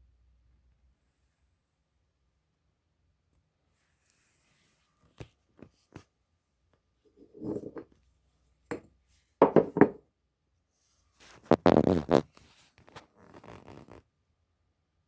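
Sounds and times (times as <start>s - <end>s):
scraping and rubbing: 7.2s - 7.9s, 11.2s - 14.0s.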